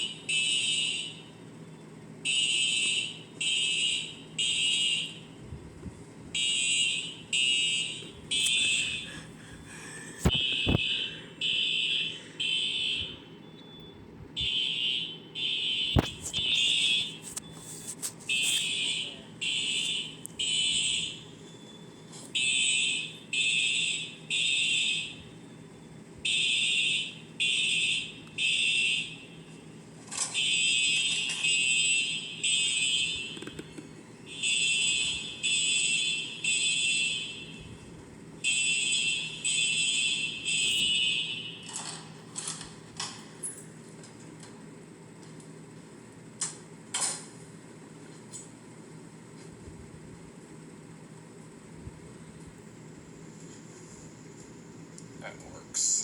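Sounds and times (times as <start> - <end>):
fire alarm beeps: 0.0 - 5.4, 6.3 - 9.3, 10.2 - 33.6, 34.2 - 41.8.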